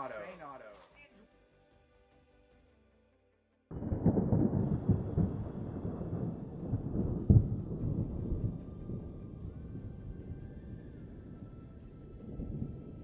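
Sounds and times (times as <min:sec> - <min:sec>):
loud low rumble with crackling: 0:03.7 - 0:13.0.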